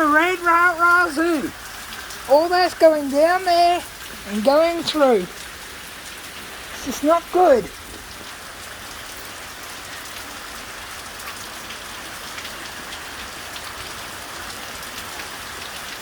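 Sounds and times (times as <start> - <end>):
heavy rain falling: 0.0 - 16.0
water splashing from gutters: 0.0 - 16.0.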